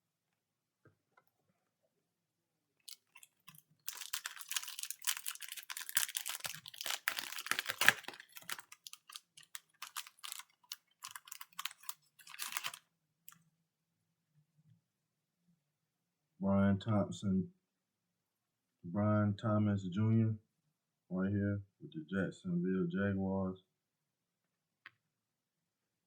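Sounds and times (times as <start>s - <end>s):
trading cards clicking and rustling: 2.9s - 12.8s.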